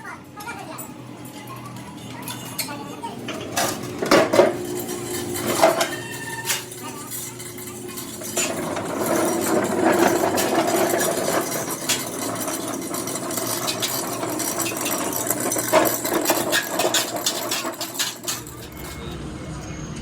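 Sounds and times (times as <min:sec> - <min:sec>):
workshop machinery running: 0:00.0 - 0:20.0
metal clinks and clatter: 0:03.6 - 0:19.2.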